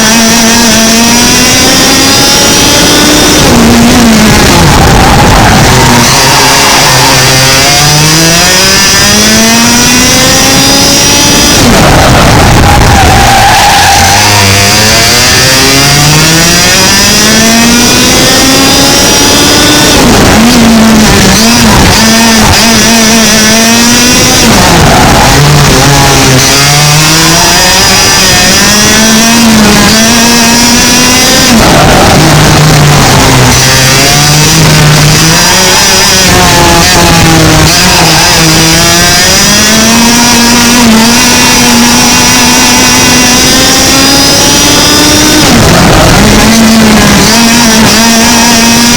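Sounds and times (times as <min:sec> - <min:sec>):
kart engine revving: 0:00.0 - 0:48.9.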